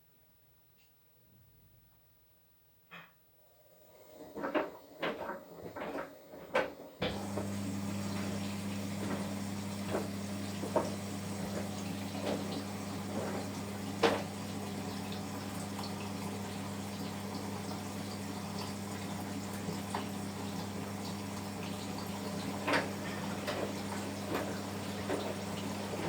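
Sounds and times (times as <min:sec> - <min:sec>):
washing machine low hum: 0:03.9 - 0:26.0
running water rushing: 0:07.1 - 0:26.0
washing machine clicks and knocks: 0:21.6 - 0:26.0.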